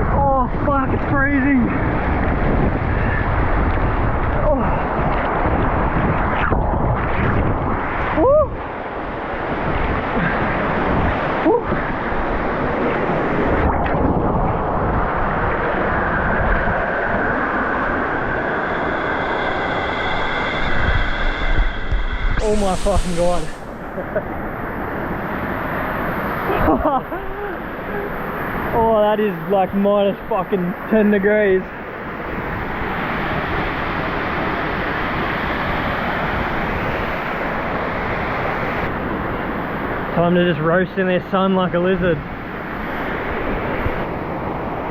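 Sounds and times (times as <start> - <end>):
waterfall roaring: 22.4 - 31.6.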